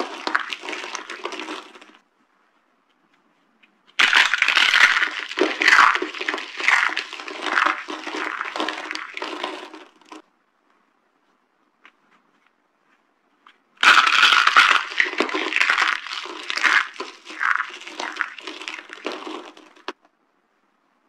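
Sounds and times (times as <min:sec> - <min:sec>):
dry soap crunching: 0:00.0 - 0:02.0, 0:03.9 - 0:10.2, 0:13.4 - 0:20.0.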